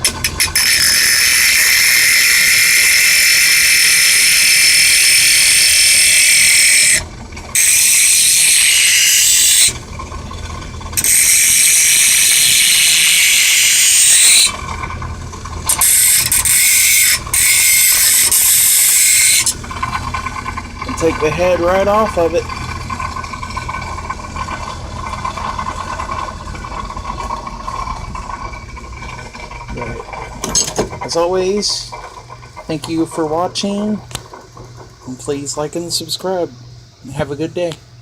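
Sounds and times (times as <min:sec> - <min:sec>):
bench grinder grinding nail: 0:00.0 - 0:07.0, 0:07.6 - 0:09.8, 0:11.0 - 0:14.6, 0:15.7 - 0:19.6
grinder motor humming: 0:00.0 - 0:37.8.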